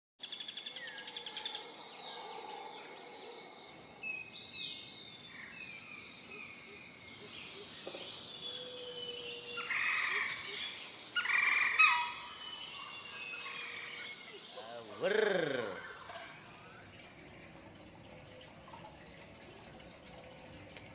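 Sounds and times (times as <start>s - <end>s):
songbirds chirping: 0.2s - 20.9s.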